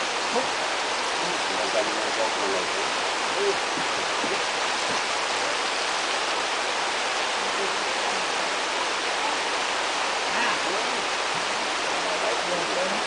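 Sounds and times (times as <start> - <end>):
water rushing: 0.0 - 13.0.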